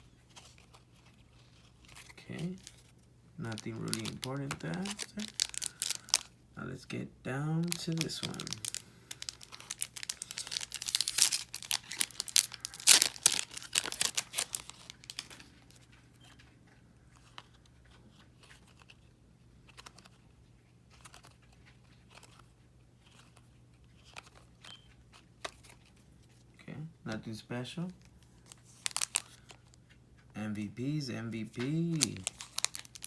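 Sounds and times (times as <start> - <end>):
wrapper tearing and crinkling: 1.8 - 6.3, 7.6 - 15.7, 28.4 - 29.7, 31.6 - 33.0
cards ticking: 1.9 - 6.3, 7.6 - 15.9, 28.1 - 29.8, 31.4 - 33.0.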